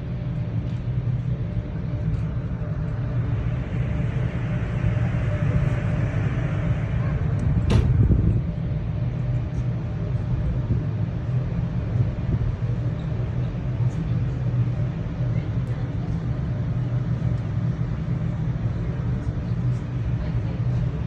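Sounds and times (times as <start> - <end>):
ship rumble: 1.3 - 10.8.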